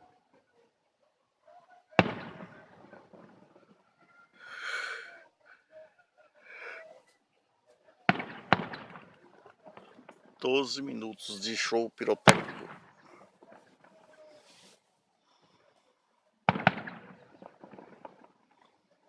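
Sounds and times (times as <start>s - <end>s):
firework bangs: 2.0s - 3.5s, 8.1s - 10.2s, 11.4s - 13.5s, 16.5s - 18.4s.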